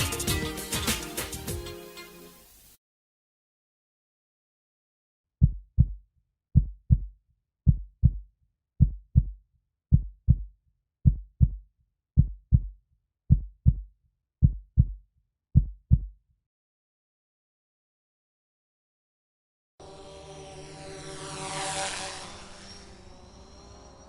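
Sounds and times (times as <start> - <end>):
heartbeat thumps: 5.4 - 6.0, 6.6 - 7.1, 7.7 - 8.2, 8.8 - 11.6, 12.2 - 15.0, 15.6 - 16.2.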